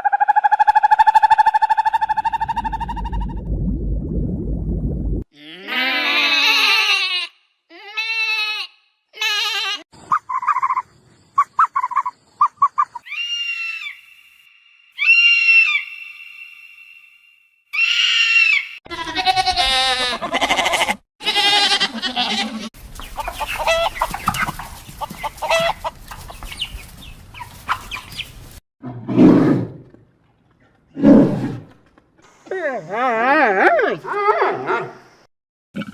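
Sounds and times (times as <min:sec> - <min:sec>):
bleats: 0:05.4 - 0:09.8, 0:17.8 - 0:22.7
chickens clucking: 0:22.3 - 0:28.6.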